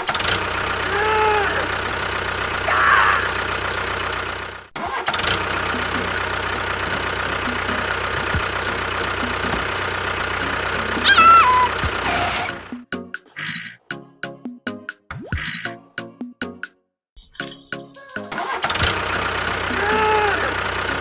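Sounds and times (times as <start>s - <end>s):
engine running: 0.0s - 12.7s, 18.8s - 21.0s.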